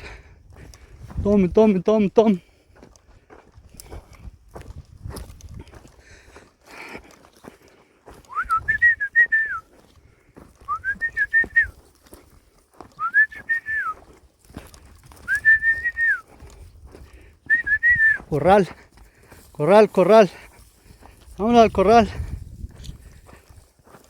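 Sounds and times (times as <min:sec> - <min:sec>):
man whistling: 0:08.2 - 0:09.8, 0:10.6 - 0:11.8, 0:12.9 - 0:14.1, 0:15.2 - 0:16.3, 0:17.4 - 0:18.4.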